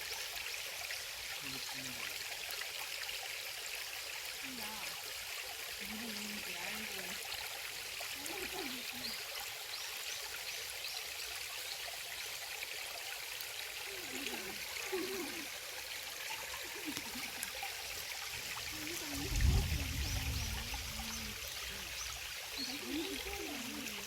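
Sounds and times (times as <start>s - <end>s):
stream rushing water: 0.0s - 24.0s
short low rumble: 19.2s - 21.2s.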